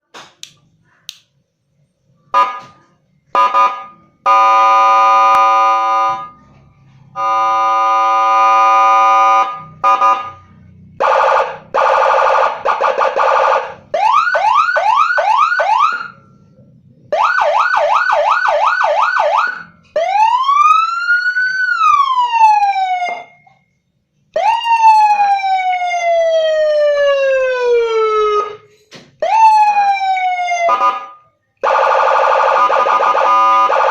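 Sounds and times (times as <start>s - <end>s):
electronic siren tones: 7.1s - 16.3s, 29.2s - 33.9s.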